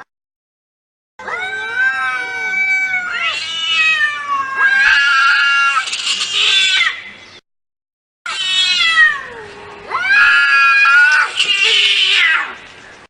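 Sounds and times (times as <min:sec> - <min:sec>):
cats yowling in a fight: 0:01.2 - 0:07.0, 0:08.3 - 0:12.6.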